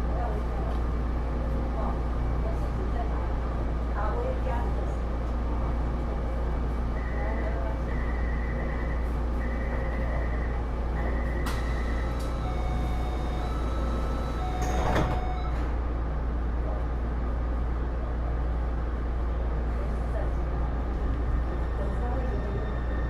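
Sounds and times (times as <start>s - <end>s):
rapid pulsed warning beep: 7.0s - 15.5s
sliding doors closing thump: 13.9s - 15.8s.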